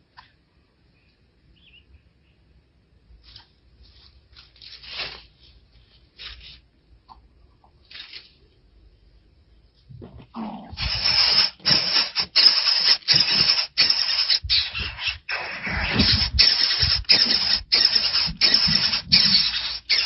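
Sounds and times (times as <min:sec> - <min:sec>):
hawk nestlings screaming: 0:10.8 - 0:20.0.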